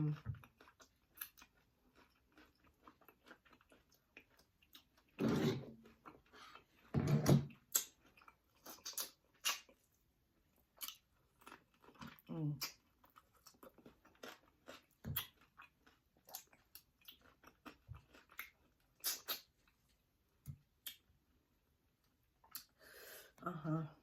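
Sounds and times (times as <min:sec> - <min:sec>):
wet chewing and lip-smacking: 0:00.0 - 0:05.2, 0:07.6 - 0:19.9, 0:20.7 - 0:21.2, 0:22.0 - 0:22.8.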